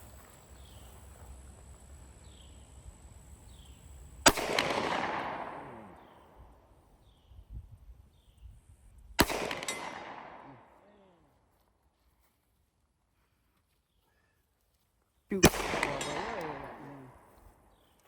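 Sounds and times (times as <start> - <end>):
pistol shot with echo: 4.3 - 6.4, 9.2 - 10.9, 15.4 - 17.2.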